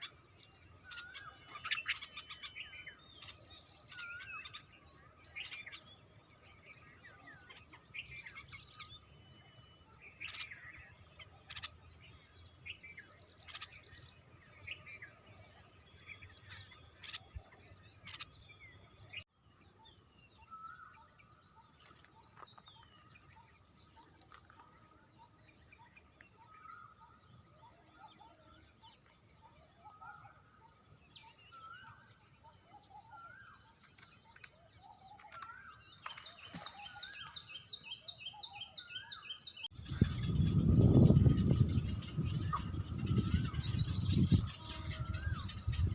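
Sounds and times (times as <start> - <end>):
wild birds trilling and chirping: 0.0 - 45.9.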